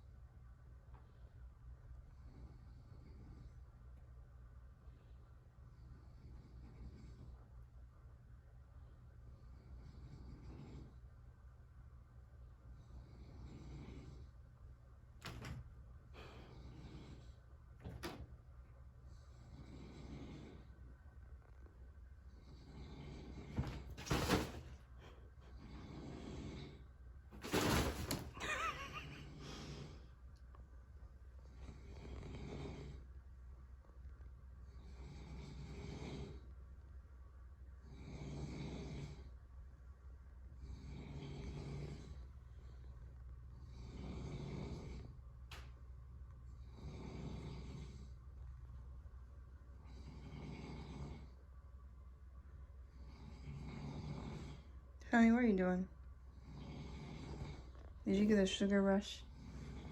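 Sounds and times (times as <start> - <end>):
soft snoring breath: 2.0 - 3.8, 5.2 - 7.7, 9.2 - 11.5, 12.6 - 15.5, 16.1 - 18.3, 19.0 - 24.0, 25.1 - 27.8, 31.3 - 33.4, 34.6 - 36.8, 37.7 - 39.5, 40.4 - 45.7, 46.4 - 48.9, 49.6 - 51.6, 52.8 - 55.0, 56.2 - 59.9.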